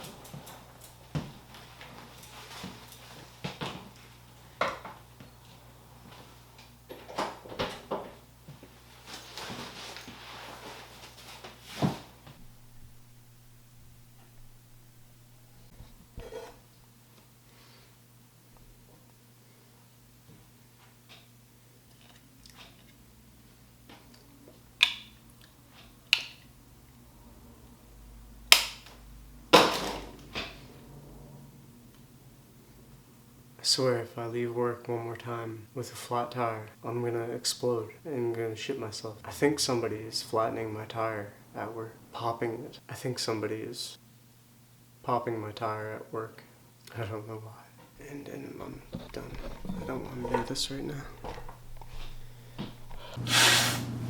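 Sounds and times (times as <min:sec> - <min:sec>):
steady low hum: 0:12.0 - 0:20.2, 0:47.4 - 0:54.0
objects knocking and clattering: 0:48.7 - 0:53.2.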